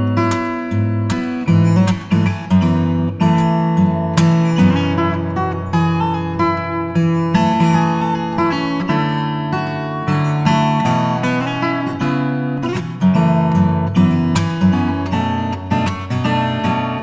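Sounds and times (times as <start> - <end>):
acoustic guitar strumming: 0.0 - 17.0.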